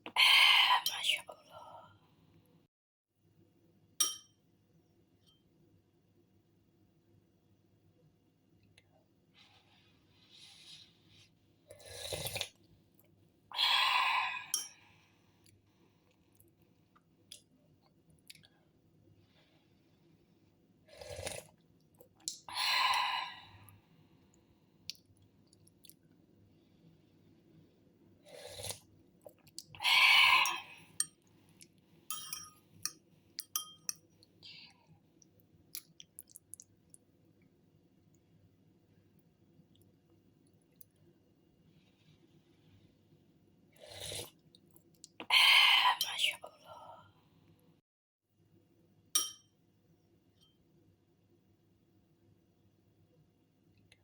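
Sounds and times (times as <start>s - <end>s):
person chewing soup: 11.8s - 12.6s, 35.2s - 37.0s.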